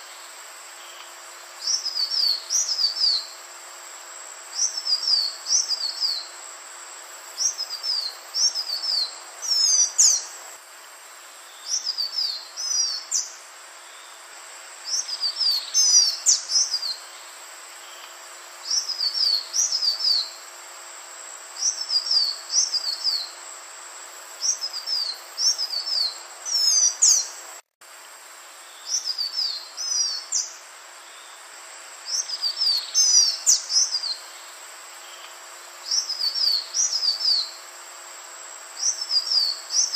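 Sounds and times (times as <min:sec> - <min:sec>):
bird singing whistled notes: 0:01.6 - 0:03.4, 0:04.6 - 0:06.3, 0:07.4 - 0:10.3, 0:11.5 - 0:14.2, 0:14.9 - 0:17.2, 0:18.6 - 0:20.4, 0:21.6 - 0:23.3, 0:24.4 - 0:27.3, 0:28.6 - 0:31.4, 0:32.1 - 0:34.4, 0:35.1 - 0:37.6, 0:38.8 - 0:39.9.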